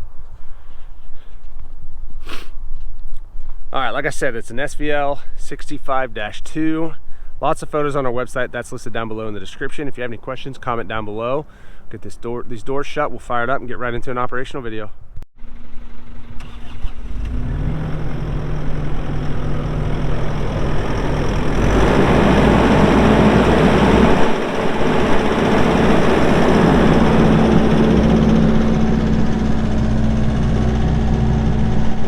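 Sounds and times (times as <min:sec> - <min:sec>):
diesel engine starting and revving: 0:15.4 - 0:32.0.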